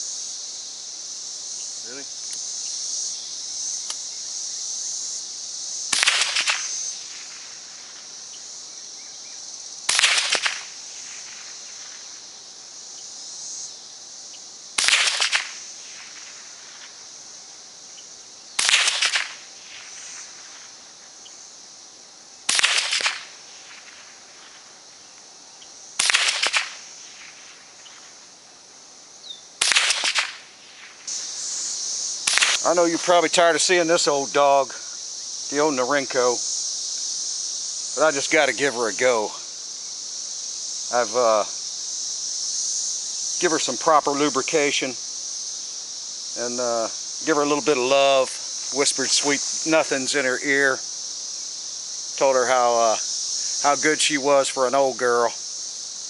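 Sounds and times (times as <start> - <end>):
insects buzzing: 0.0 - 56.0
rifle shots: 5.9 - 6.7, 9.9 - 10.7, 14.8 - 15.6, 18.6 - 19.4, 22.5 - 23.3, 26.0 - 26.8, 29.6 - 30.4, 32.2 - 32.6.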